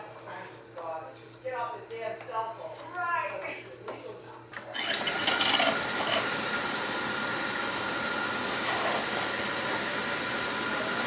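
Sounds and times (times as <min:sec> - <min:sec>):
thin steady whine: 0:00.0 - 0:07.0
oil burner blower and flame rushing: 0:04.8 - 0:11.0.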